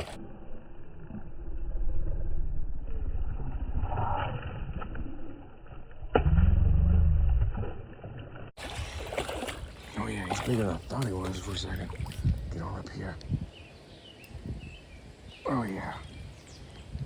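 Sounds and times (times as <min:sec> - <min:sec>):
low rumble: 0:00.0 - 0:09.1
wind buffeting microphone: 0:08.6 - 0:17.0.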